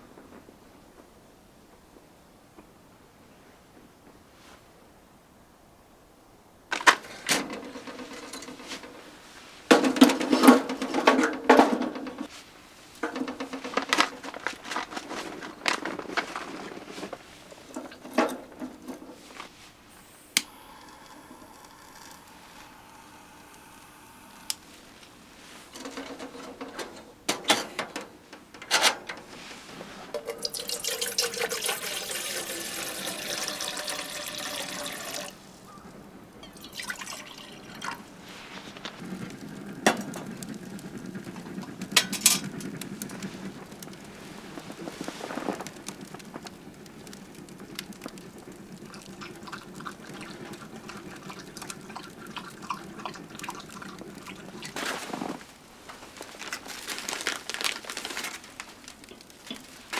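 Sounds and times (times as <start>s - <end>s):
water running: 17.2s - 27.3s, 30.1s - 41.6s, 45.8s - 55.1s.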